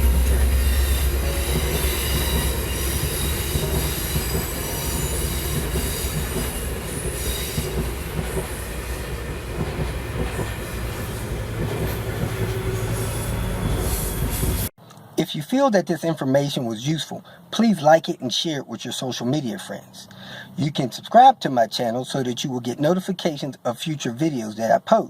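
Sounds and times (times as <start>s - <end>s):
train wheels rumbling on rails: 0.0s - 14.7s.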